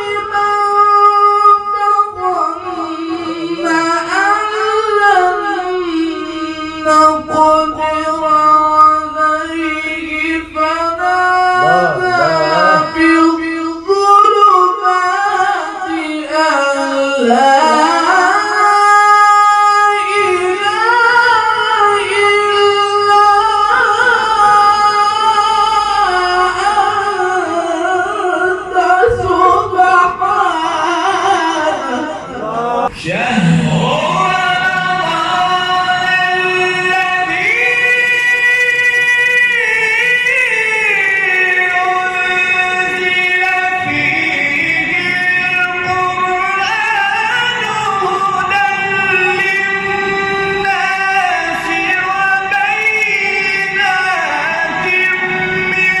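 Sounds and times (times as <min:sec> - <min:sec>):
person singing melismatic melody: 0:11.6 - 0:13.2, 0:32.3 - 0:38.6.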